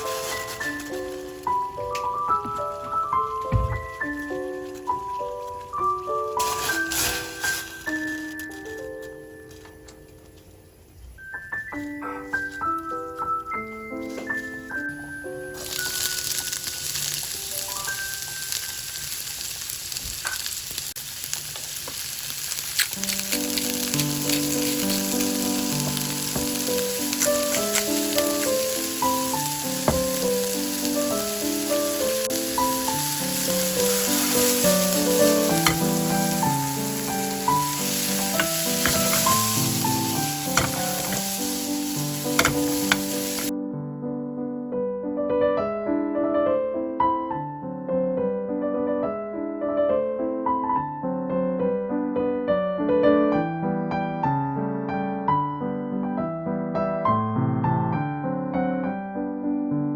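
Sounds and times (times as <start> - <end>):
food sizzling in a pan: 0.0 - 8.4, 14.0 - 43.5
soft background music: 0.0 - 19.2, 23.0 - 44.1
utensils clicking against pan: 22.6 - 30.6, 33.2 - 43.5.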